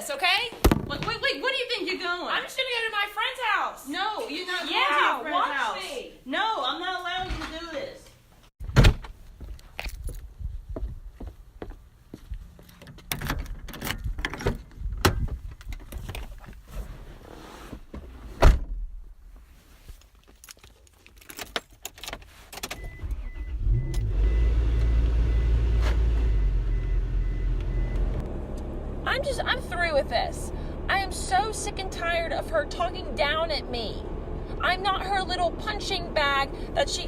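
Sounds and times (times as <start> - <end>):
keys jangling: 20.2 - 22.2
car engine starting and running: 22.7 - 37.0.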